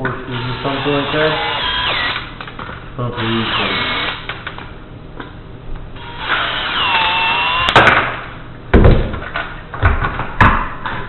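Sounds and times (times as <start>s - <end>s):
cordless power screwdriver whine: 0.4s - 2.3s, 3.2s - 4.3s, 6.0s - 7.8s.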